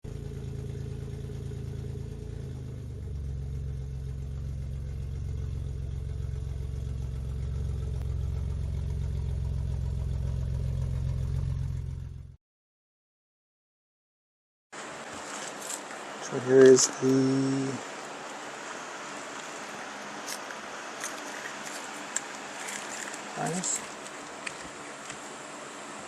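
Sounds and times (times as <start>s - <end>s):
engine idling: 0.0s - 12.4s.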